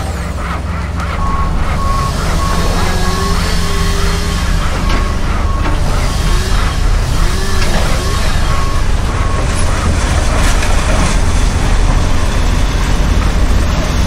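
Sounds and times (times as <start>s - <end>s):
construction site noise: 0.0s - 14.0s
heavy machinery rumbling: 0.0s - 14.0s
short beeps: 1.2s - 6.1s.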